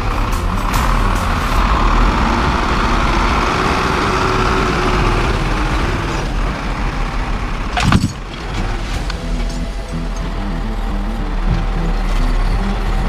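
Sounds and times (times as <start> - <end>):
truck diesel engine running: 0.0 - 13.0.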